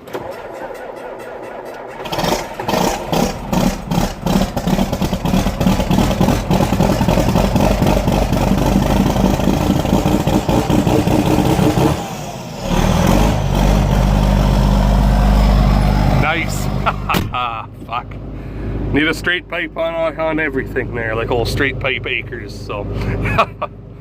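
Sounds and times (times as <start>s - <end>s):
tractor engine cranking: 0.0s - 18.3s
diesel engine running: 0.0s - 24.0s.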